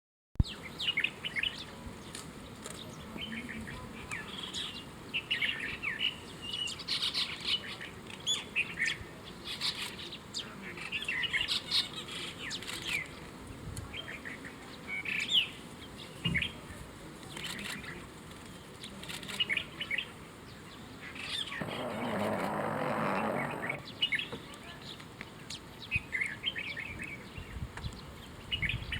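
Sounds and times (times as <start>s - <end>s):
faint steady hiss: 0.4s - 28.9s
small birds chirping: 17.2s - 28.9s.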